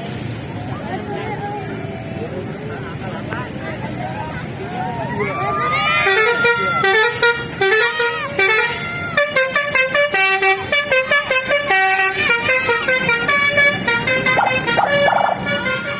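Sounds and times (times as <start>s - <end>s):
multi-tone bus horn melody: 5.8s - 15.9s.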